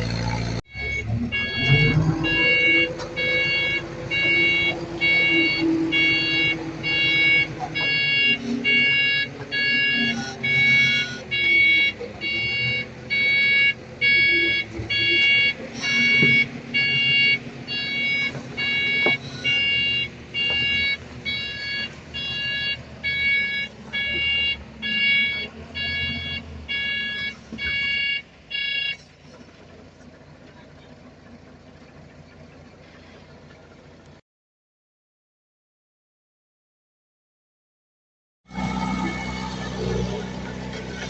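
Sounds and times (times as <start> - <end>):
diesel engine running: 0.0 - 34.2, 38.5 - 41.0
reversing alarm beeping: 0.1 - 29.0.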